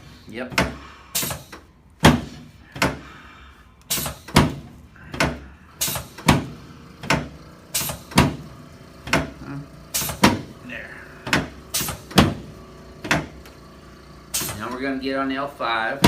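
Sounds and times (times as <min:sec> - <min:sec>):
adjusting table thudding: 0:03.9 - 0:08.4, 0:10.0 - 0:10.5, 0:11.2 - 0:13.4.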